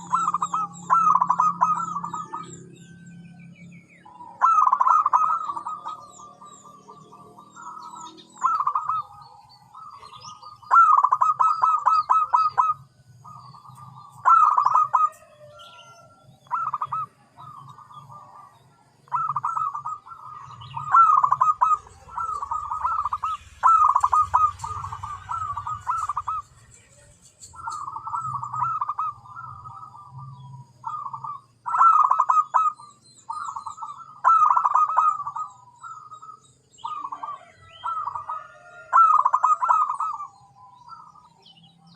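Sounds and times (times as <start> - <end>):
dove cooing: 0.0 - 2.8, 4.0 - 41.9
small birds chirping: 0.0 - 41.9.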